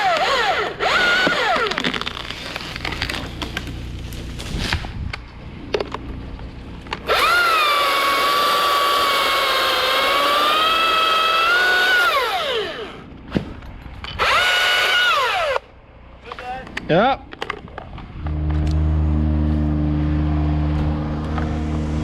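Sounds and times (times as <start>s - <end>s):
electric chainsaw motor whining: 0.0s - 4.5s, 6.9s - 13.1s, 14.0s - 15.7s.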